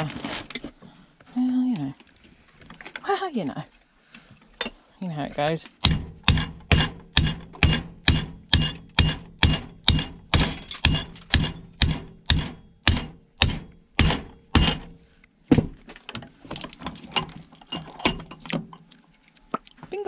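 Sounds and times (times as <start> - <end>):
hammer blows on metal: 5.8 - 15.0.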